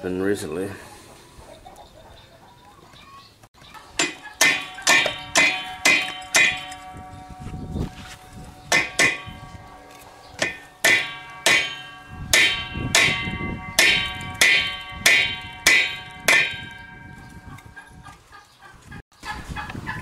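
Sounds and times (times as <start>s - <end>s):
hammer striking ringing steel: 4.0s - 18.0s.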